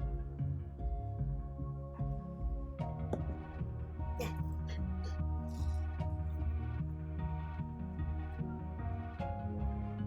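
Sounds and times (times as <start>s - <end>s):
background music with bass notes: 0.0s - 10.0s.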